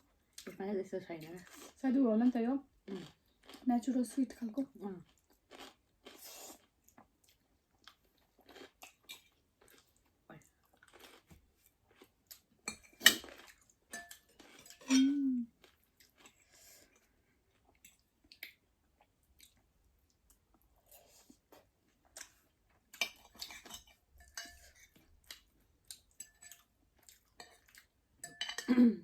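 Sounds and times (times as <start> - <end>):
person chewing: 5.1 - 14.9, 15.6 - 24.0, 25.0 - 28.0
cutlery clinking against bowl: 12.6 - 15.2, 23.0 - 25.1, 26.1 - 26.7, 27.4 - 28.8.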